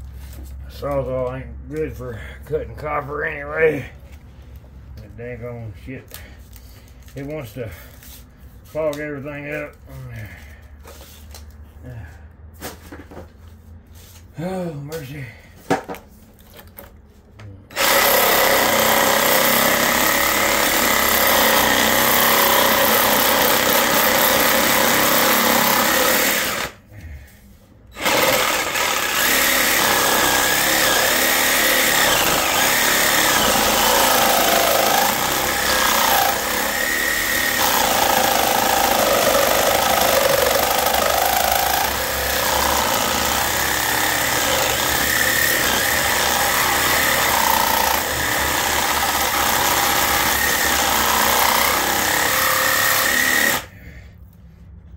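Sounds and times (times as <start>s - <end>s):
reciprocating saw cutting copper: 17.7s - 26.8s, 28.0s - 53.8s.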